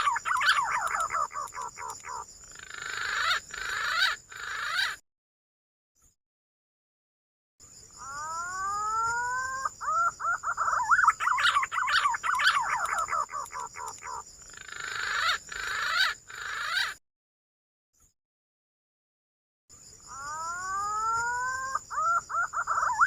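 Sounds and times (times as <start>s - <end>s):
green pigeon song: 0.0s - 5.0s, 8.0s - 17.0s, 20.1s - 23.0s.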